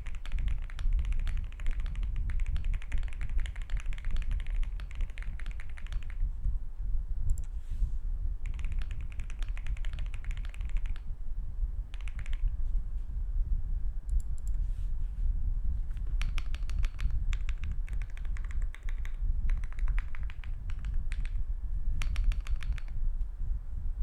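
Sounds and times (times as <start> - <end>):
fast mechanical keyboard typing: 0.0 - 6.2, 8.4 - 11.1, 11.9 - 12.5, 16.0 - 21.4, 22.0 - 23.0.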